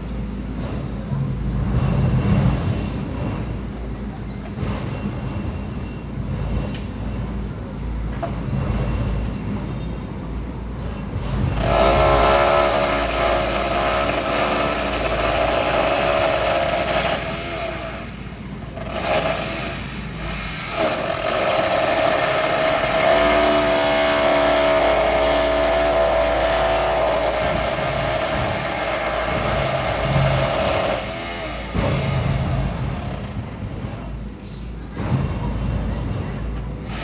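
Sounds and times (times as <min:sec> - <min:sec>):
construction machinery drone: 0:06.7 - 0:36.2.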